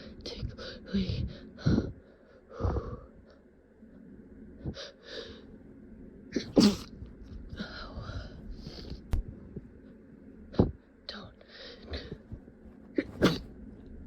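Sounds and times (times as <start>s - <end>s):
stifled sneeze: 6.4s - 6.9s, 13.0s - 13.5s.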